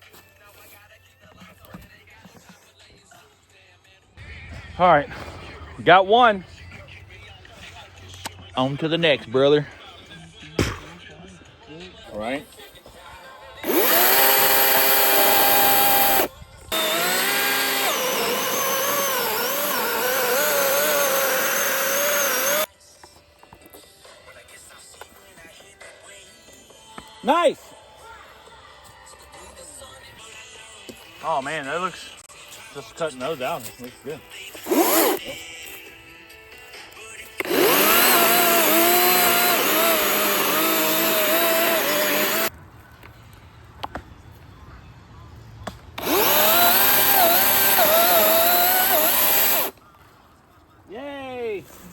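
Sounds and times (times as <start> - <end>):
chainsaw cutting tree stump: 13.6 - 22.7, 34.6 - 35.2, 37.4 - 42.5, 46.0 - 49.8.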